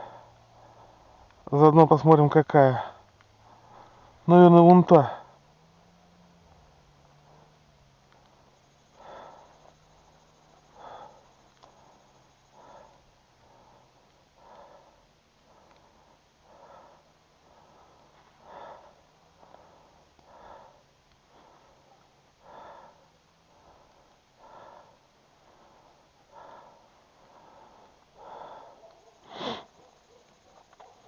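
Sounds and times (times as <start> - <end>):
person breathing through the nose: 8.3 - 30.0
sharp sniff: 27.4 - 29.9.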